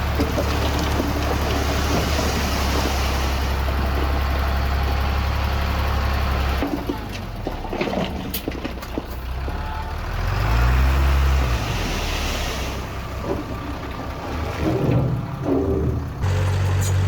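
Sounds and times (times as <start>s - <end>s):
diesel engine droning: 0.0s - 7.7s, 9.1s - 17.0s
metal clanks and knocks: 13.2s - 17.0s.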